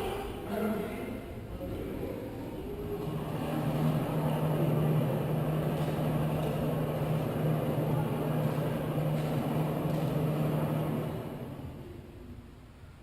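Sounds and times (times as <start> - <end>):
engine running steadily: 3.0 - 11.8.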